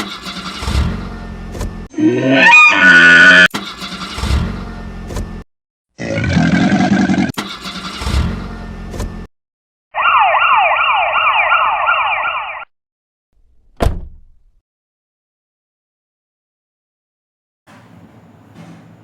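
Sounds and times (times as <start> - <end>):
electronic siren sweeps: 10.0 - 12.7.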